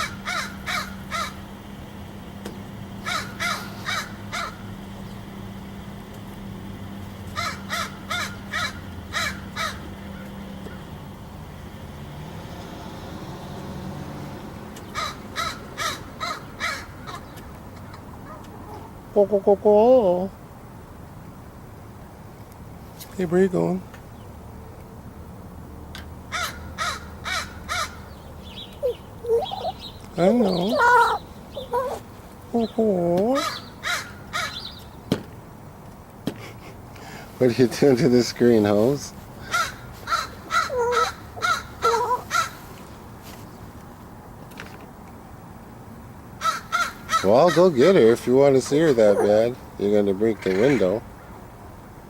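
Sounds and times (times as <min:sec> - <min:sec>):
crow cawing: 0:00.0 - 0:01.4, 0:03.0 - 0:04.6, 0:07.4 - 0:10.8, 0:15.0 - 0:17.3, 0:26.3 - 0:28.1, 0:33.4 - 0:34.6, 0:39.4 - 0:42.6, 0:46.4 - 0:47.7.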